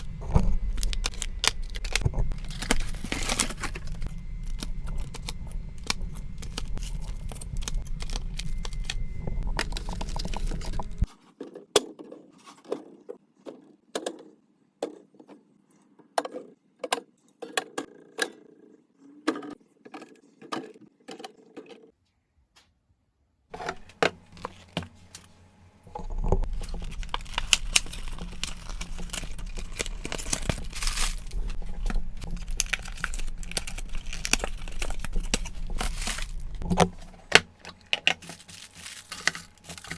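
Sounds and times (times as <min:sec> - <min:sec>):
low steady hum: 0:00.0 - 0:11.1, 0:23.5 - 0:39.9
packets crinkling and tearing: 0:00.0 - 0:11.1, 0:23.6 - 0:39.9.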